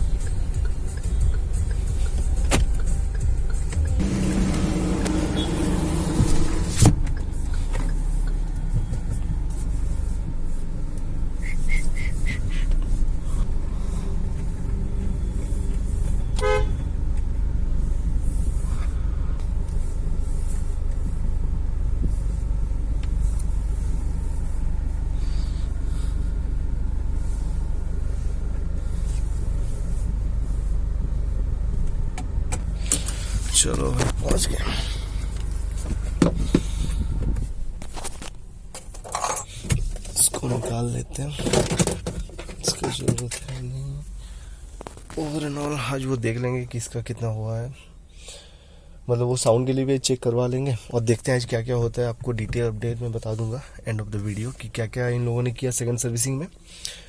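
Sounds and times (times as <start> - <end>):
road and engine rumble: 0.0 - 57.0
car horn toot: 4.0 - 6.8, 16.2 - 16.9.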